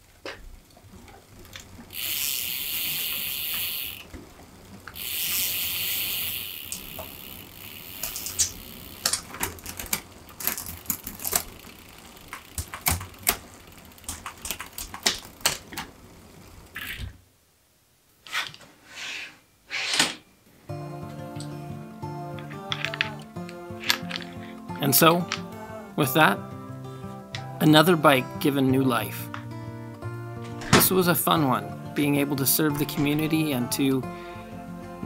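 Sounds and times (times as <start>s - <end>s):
bicycle parts clicking: 1.0s - 17.1s, 22.4s - 25.5s
aerosol can spraying: 2.0s - 4.0s, 5.0s - 9.1s.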